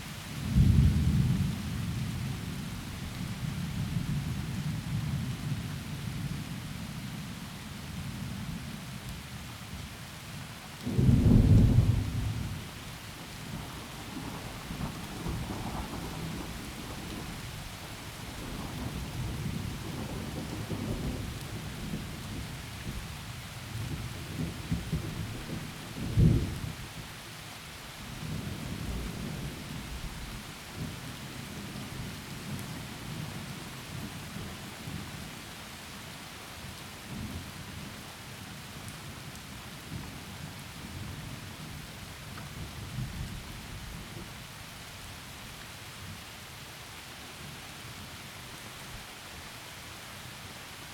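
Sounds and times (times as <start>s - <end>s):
heavy rain falling through trees: 0.0s - 50.9s
sharp thunderclap: 10.9s - 12.6s
rolling thunder: 10.9s - 26.8s.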